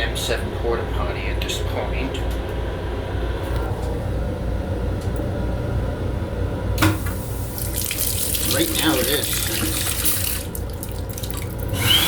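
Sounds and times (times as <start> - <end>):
railcar low rumble: 0.0 - 7.5
water running from tap: 6.8 - 12.0.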